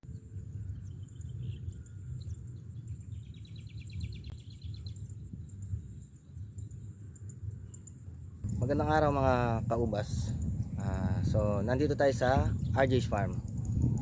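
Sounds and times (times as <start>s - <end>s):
low rumble: 4.2s - 14.0s.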